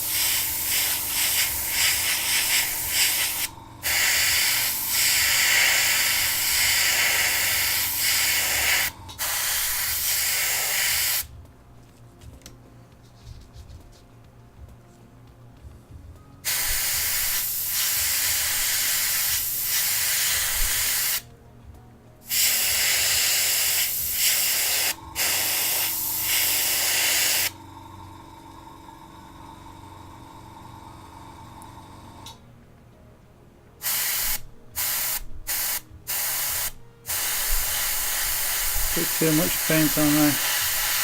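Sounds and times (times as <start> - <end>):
paint sprayer hissing: 0.0 - 11.3, 16.4 - 21.3, 22.2 - 27.6, 33.8 - 41.0
faint steady hum: 24.0 - 33.8.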